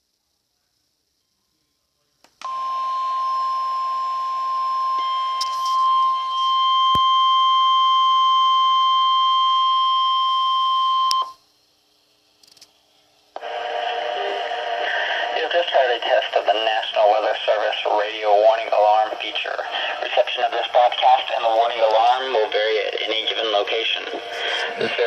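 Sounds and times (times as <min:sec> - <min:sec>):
steady high alarm tone: 0:02.4 - 0:11.5, 0:13.4 - 0:25.0
radio hiss: 0:04.9 - 0:07.1, 0:13.3 - 0:25.0.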